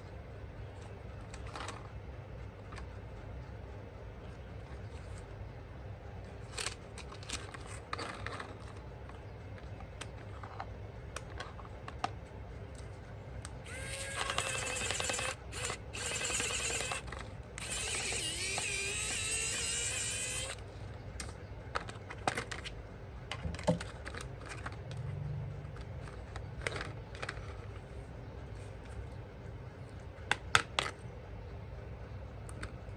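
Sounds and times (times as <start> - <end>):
small electric motor whirring: 13.6 - 20.6.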